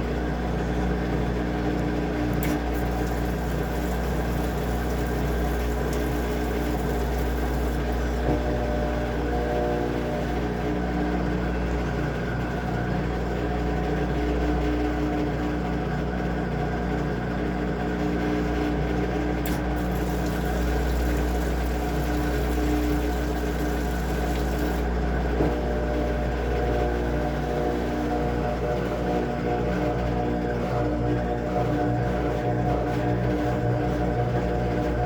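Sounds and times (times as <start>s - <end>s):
washing machine running: 0.0s - 35.0s
small click: 19.4s - 19.7s.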